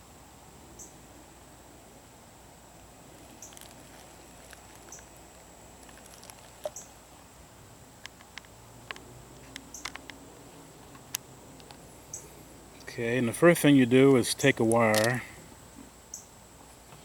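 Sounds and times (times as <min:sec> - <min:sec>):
steady low hiss: 0:00.0 - 0:17.0
small objects clicking and tapping: 0:05.8 - 0:06.9, 0:14.7 - 0:15.2.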